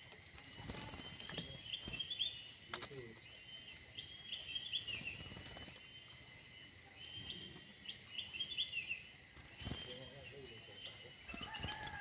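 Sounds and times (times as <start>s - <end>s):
small bird singing: 0.0s - 12.0s
faint steady high tone: 0.3s - 11.4s.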